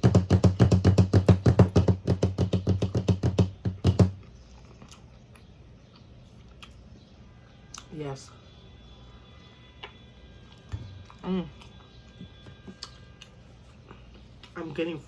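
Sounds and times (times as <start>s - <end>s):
crunching while chewing: 4.2s - 7.0s, 7.7s - 7.9s, 9.7s - 14.6s.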